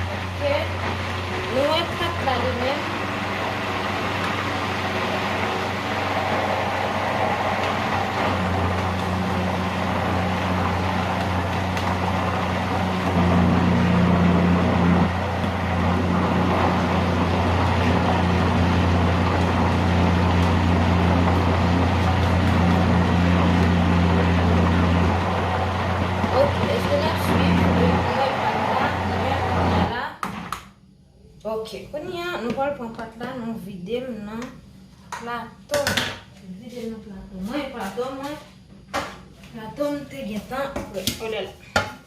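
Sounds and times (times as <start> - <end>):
blender motor hum: 0.0 - 30.6.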